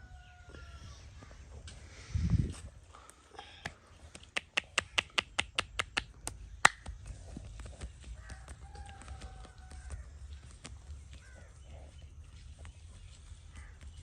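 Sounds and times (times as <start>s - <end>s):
hands clicking in massage: 3.6s - 11.3s.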